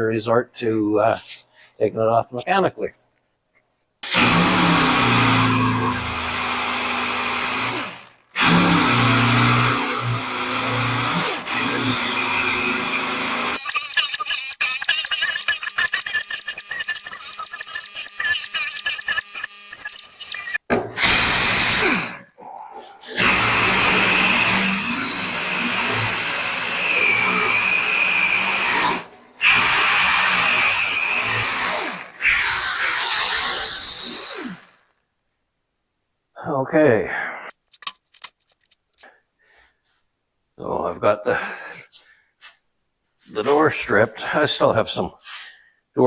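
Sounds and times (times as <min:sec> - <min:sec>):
power tool grinding paint: 0:04.0 - 0:20.6, 0:23.1 - 0:34.7.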